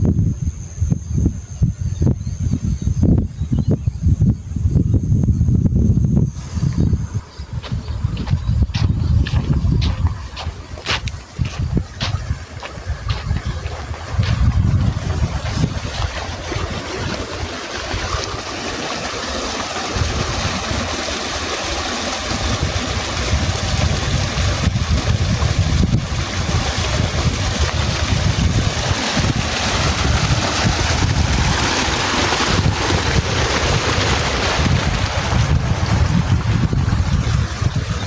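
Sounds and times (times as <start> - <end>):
wind buffeting microphone: 0.0 - 38.0.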